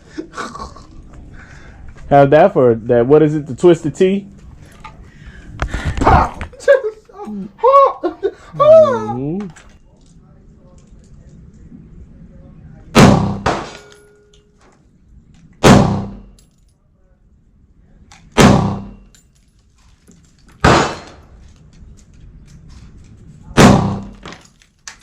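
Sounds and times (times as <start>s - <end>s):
echoing gunshots: 12.9s - 13.9s, 15.6s - 16.3s, 18.4s - 19.0s, 20.6s - 21.3s, 23.6s - 24.3s.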